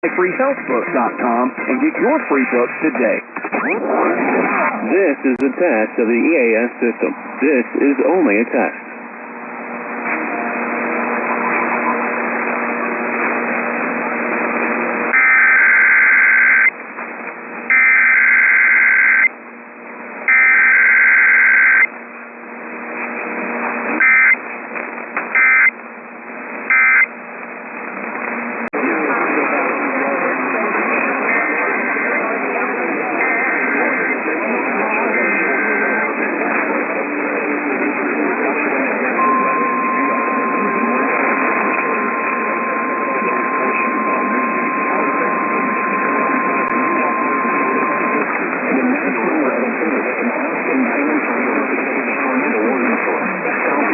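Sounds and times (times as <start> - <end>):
faint radio hiss: 0.0 - 3.2, 4.8 - 15.1, 27.8 - 53.9
buzzing two-tone digital data bursts: 17.7 - 19.3, 20.3 - 21.9, 25.4 - 25.7, 26.7 - 27.1
unbroken alert tone: 39.2 - 48.8.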